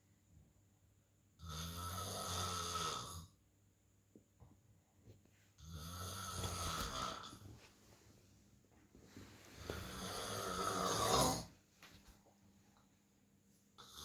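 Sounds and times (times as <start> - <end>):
man snoring: 1.4 - 3.3, 5.7 - 7.4, 9.8 - 11.5, 13.8 - 14.0.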